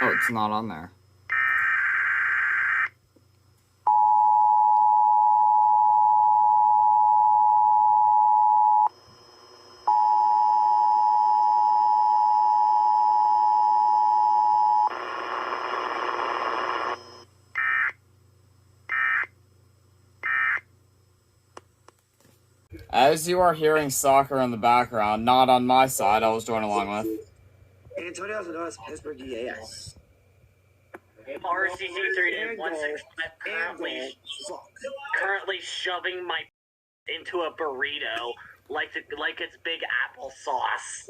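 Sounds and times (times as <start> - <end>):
short data bursts: 14.8 - 18.0.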